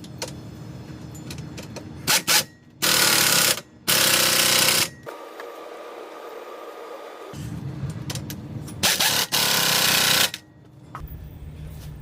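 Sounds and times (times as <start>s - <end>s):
impact wrench bursts: 2.0s - 5.1s, 8.8s - 10.4s.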